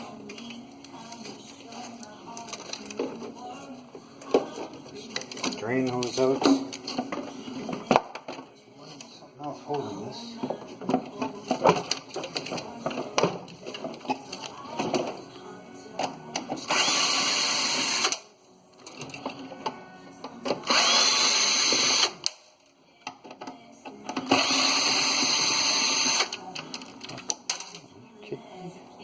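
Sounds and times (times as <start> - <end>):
power drill backing out screws: 20.6 - 22.2, 24.2 - 26.4.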